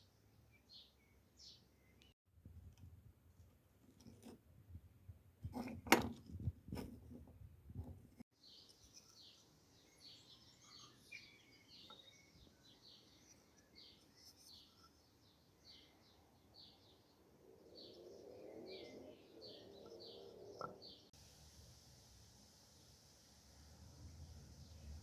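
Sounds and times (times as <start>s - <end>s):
small bird chirping: 8.4s - 21.2s.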